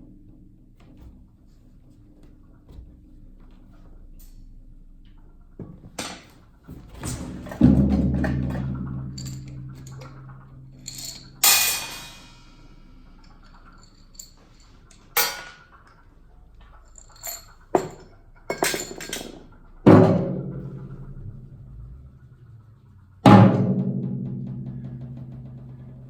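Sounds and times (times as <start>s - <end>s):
metal percussion strikes ringing: 7.1s - 15.7s.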